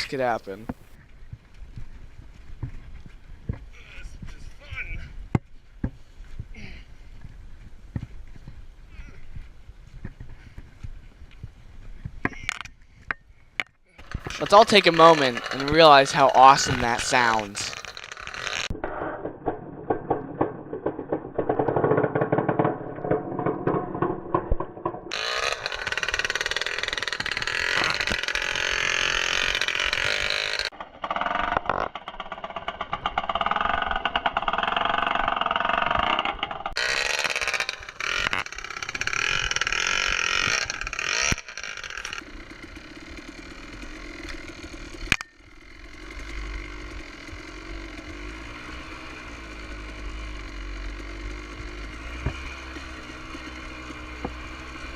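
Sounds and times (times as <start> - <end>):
dirt bike engine revving: 14.0 - 18.7, 19.4 - 54.9
sharp crack: 14.0 - 33.9.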